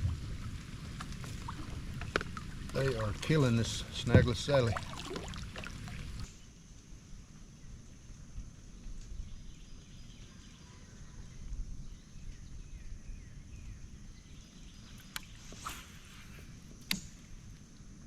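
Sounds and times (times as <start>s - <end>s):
creek water: 0.0s - 6.4s
brief hiss: 15.3s - 16.6s.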